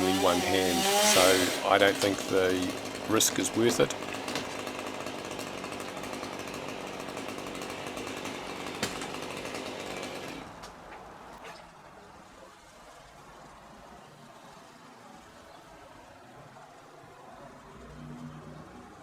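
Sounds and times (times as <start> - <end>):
chainsaw running at high revs: 0.0 - 10.6.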